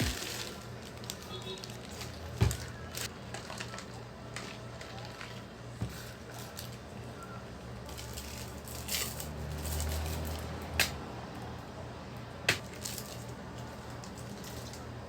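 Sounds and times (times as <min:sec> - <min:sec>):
objects being handled: 0:00.0 - 0:06.8.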